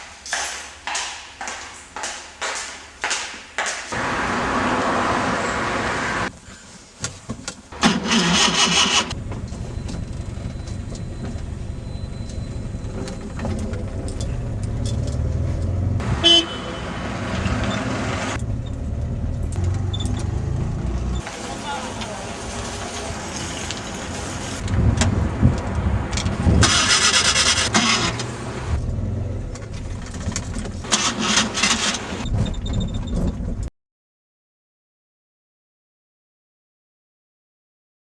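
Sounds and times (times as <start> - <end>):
car engine droning: 3.9 - 6.9, 7.7 - 32.3
car horn: 16.0 - 18.4.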